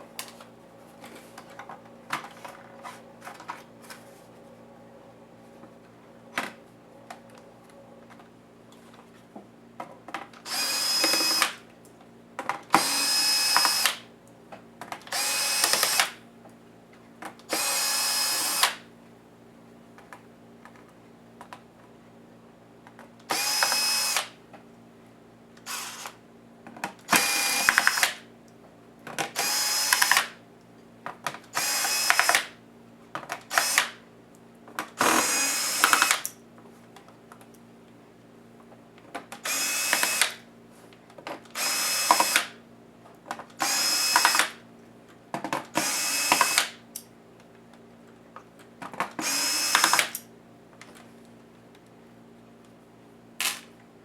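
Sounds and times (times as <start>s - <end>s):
electric screwdriver motor whine: 10.5s - 11.6s, 12.8s - 14.0s, 15.1s - 16.2s, 17.5s - 18.8s, 23.3s - 24.3s, 25.7s - 26.2s, 27.1s - 28.1s, 29.4s - 30.2s, 31.6s - 32.4s, 33.5s - 33.9s, 35.0s - 36.2s, 39.4s - 40.3s, 41.6s - 42.5s, 43.6s - 44.5s, 45.8s - 46.6s, 49.2s - 50.1s.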